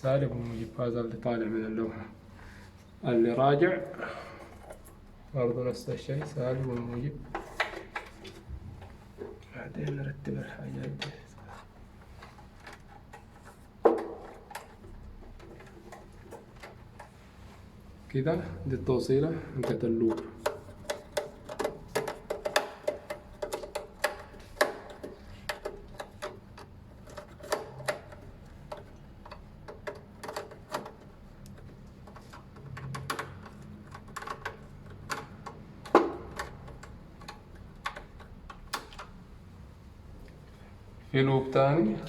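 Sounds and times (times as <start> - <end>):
clicks and taps of wiring: 10.8 - 17.2, 19.6 - 39.2.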